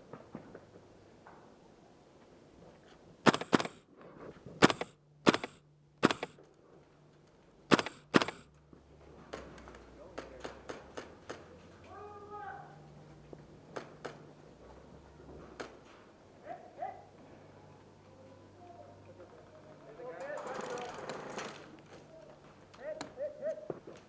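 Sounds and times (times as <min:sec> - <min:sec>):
airsoft gun shots: 0:03.2 - 0:03.8, 0:04.6 - 0:06.4, 0:07.7 - 0:08.5.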